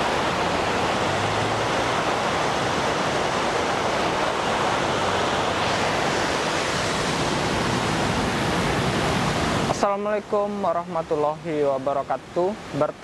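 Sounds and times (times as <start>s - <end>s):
river water rushing: 0.0s - 13.0s.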